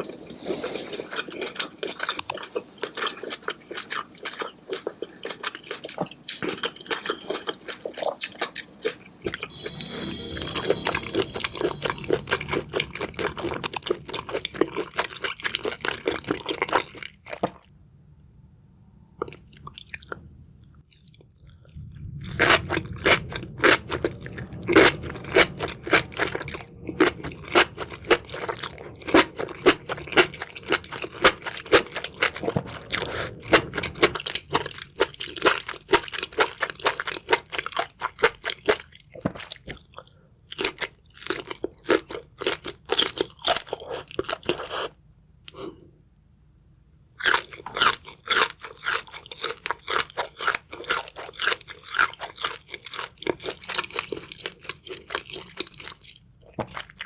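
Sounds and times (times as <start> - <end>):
crunchy chewing: 0.0 - 9.5, 19.2 - 45.8, 47.2 - 57.0.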